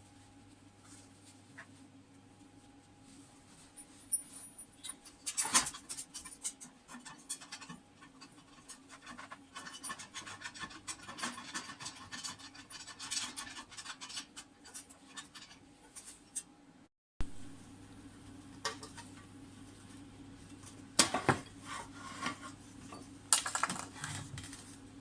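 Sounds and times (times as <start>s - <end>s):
scratching and rubbing on lamp parts: 0.0s - 16.5s, 18.6s - 24.9s
faint steady hum: 14.7s - 25.0s.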